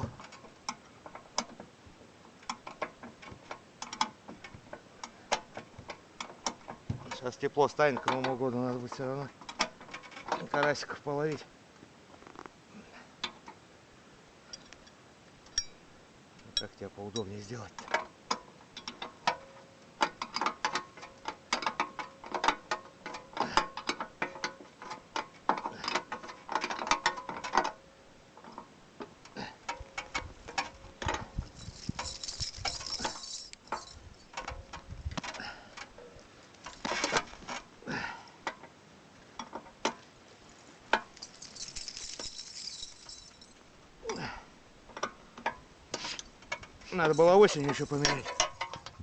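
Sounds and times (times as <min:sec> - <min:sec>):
metal clanks and knocks: 0:02.4 - 0:11.0, 0:16.5 - 0:27.8, 0:29.3 - 0:37.7, 0:44.9 - 0:49.0
short scraping hisses: 0:45.9 - 0:46.3.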